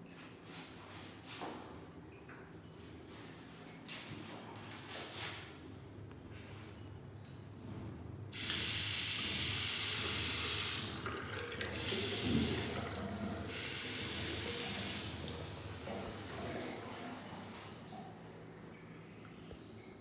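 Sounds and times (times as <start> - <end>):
tap water running into basin: 8.3 - 18.1.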